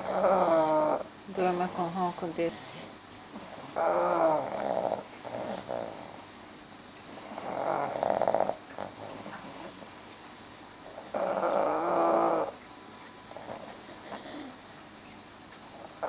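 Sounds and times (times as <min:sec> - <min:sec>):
dog snoring: 0:00.0 - 0:02.2, 0:03.3 - 0:06.3, 0:07.1 - 0:09.9, 0:10.8 - 0:12.6, 0:13.3 - 0:14.6, 0:15.7 - 0:16.0.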